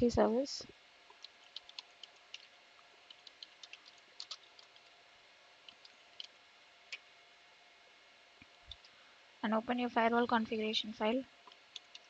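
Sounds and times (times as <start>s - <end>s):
computer keyboard keystrokes: 1.1s - 2.5s, 3.1s - 4.9s, 11.5s - 12.0s.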